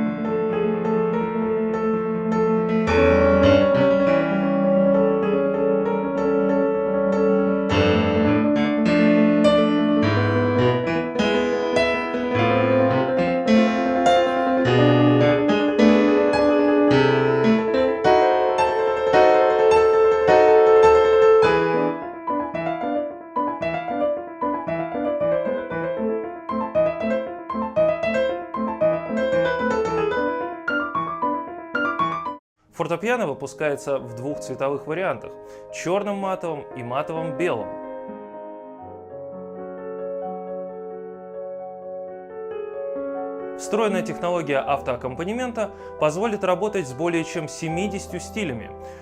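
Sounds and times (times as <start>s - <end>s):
piano melody with chords: 0.0s - 49.0s.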